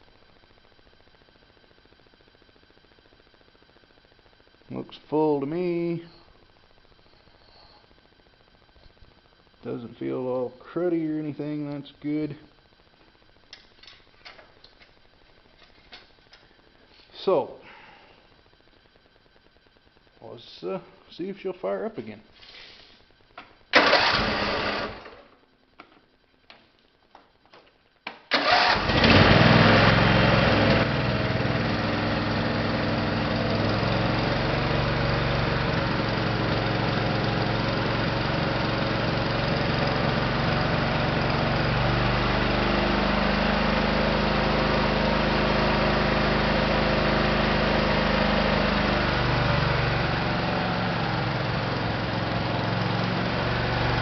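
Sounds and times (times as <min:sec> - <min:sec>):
engine cranking: 0:23.8 - 0:25.0, 0:28.3 - 0:29.4
engine running: 0:23.8 - 0:25.2, 0:28.3 - 0:54.0.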